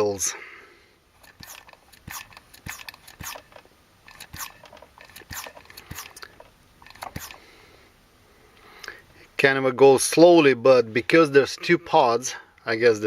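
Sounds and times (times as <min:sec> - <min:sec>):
hand vacuum pump clicking and hissing: 0:01.2 - 0:07.5.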